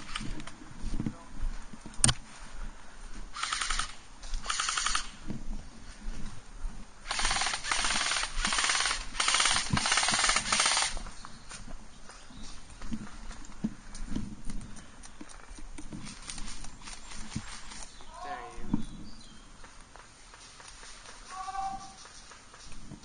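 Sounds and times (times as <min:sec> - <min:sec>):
airsoft gun rapid bursts: 0:03.4 - 0:05.1, 0:07.1 - 0:11.0.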